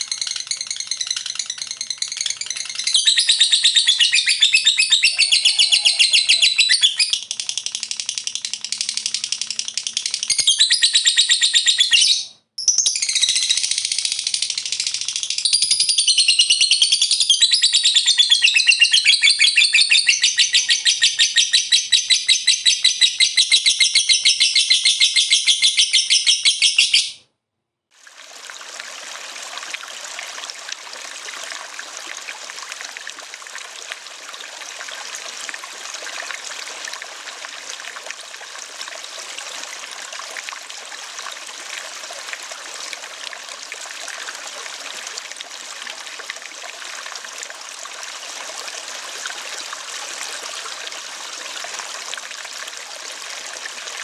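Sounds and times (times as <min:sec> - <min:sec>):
running water: 0:00.0 - 0:11.4, 0:27.9 - 0:54.0
lovebird chattering trill: 0:00.0 - 0:27.2.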